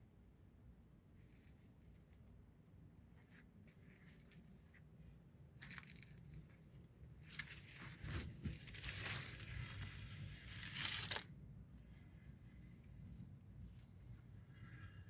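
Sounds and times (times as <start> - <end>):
dry crackling and rustling: 5.6 - 11.4.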